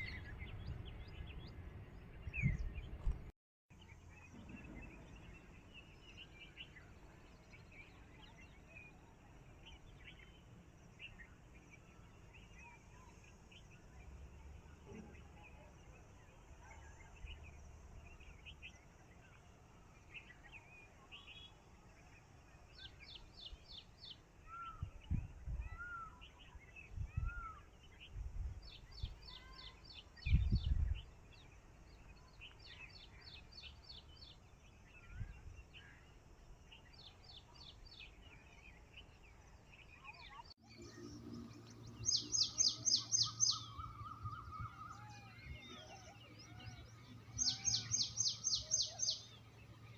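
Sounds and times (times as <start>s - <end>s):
birds chirping and calling: 39.8s - 49.9s
low steady hum: 40.6s - 47.4s.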